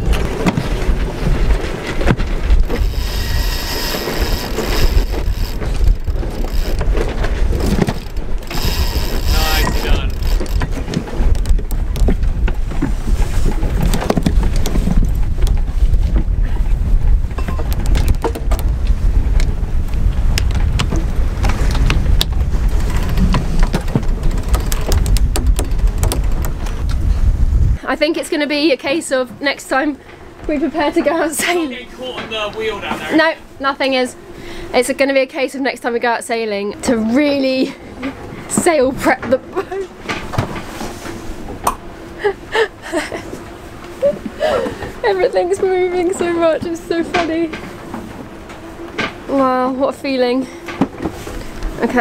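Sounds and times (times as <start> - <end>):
knocks and rattles: 0.0 - 16.3, 20.4 - 26.9
wind buffeting: 0.0 - 52.0.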